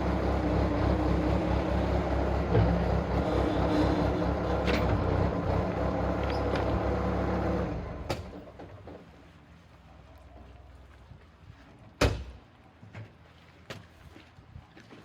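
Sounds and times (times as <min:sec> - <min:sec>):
engine running: 0:00.0 - 0:08.4.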